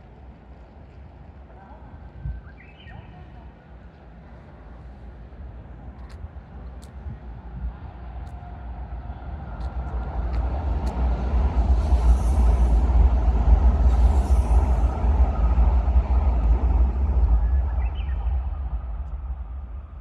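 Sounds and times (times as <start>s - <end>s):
train rumbling past: 0.0s - 20.0s.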